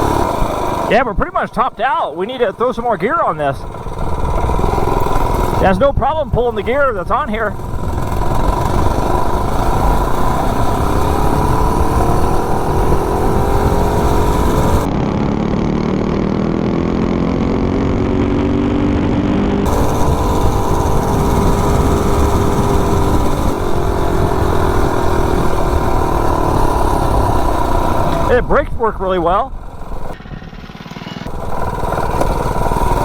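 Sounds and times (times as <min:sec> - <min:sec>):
mini bike engine running hard: 0:00.0 - 0:33.0
wind rumble on microphone: 0:17.4 - 0:30.5.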